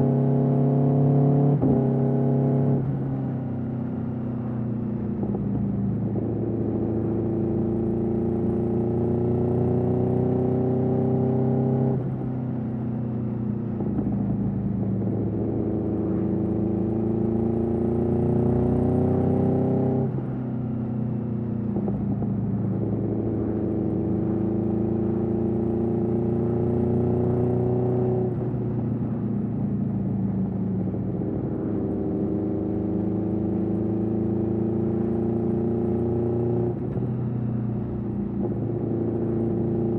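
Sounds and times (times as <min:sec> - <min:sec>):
motorcycle engine accelerating: 0:00.0 - 0:12.8, 0:13.4 - 0:39.9.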